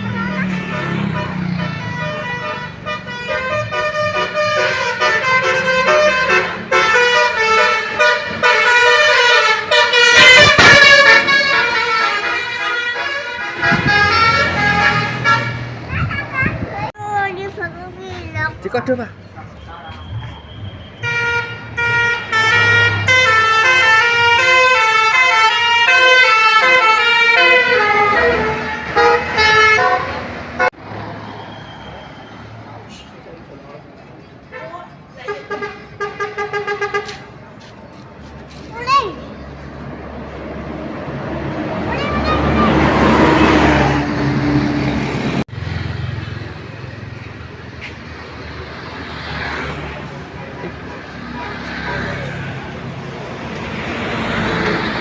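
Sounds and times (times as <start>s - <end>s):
musical air horns playing a tune: 0.3s - 15.7s.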